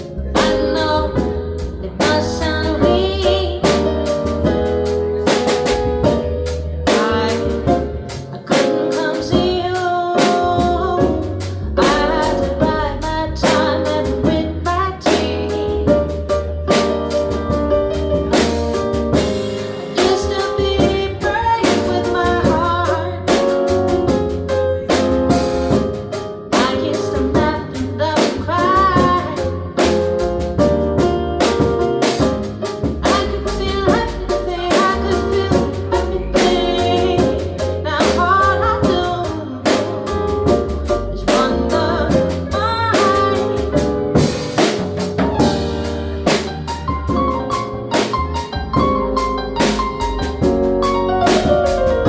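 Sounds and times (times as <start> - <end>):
person singing: 0.0 - 4.6, 5.2 - 16.4, 19.7 - 24.0, 26.4 - 30.0, 33.0 - 44.0
low bass line: 0.0 - 8.4, 10.6 - 52.0
drum kit with cymbal strokes: 0.0 - 52.0.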